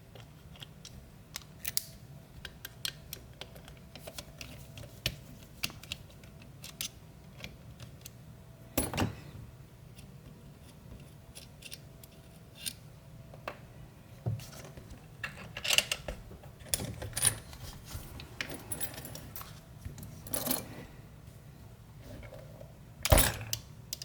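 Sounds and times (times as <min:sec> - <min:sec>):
metallic clicks of lock parts: 0:00.5 - 0:04.2, 0:15.2 - 0:17.5.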